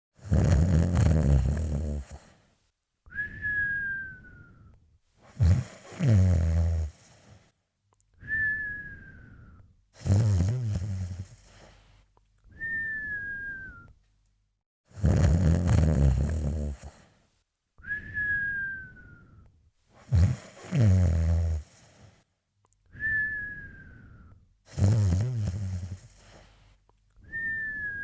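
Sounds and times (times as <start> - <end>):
cartoon snoring: 0.2 - 2.4, 5.3 - 7.5, 10.0 - 11.8, 14.9 - 17.1, 20.0 - 22.2, 24.7 - 26.6.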